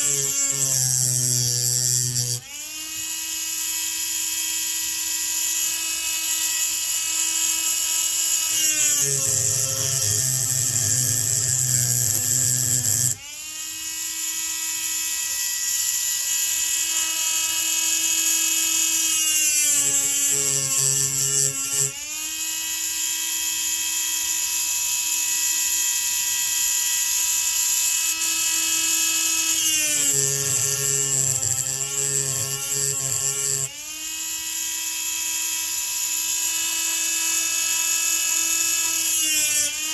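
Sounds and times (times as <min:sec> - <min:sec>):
rotary tool whining: 0:00.0 - 0:24.2, 0:25.4 - 0:39.9
bit grinding against metal: 0:07.1 - 0:13.2, 0:18.8 - 0:22.0, 0:29.5 - 0:33.7.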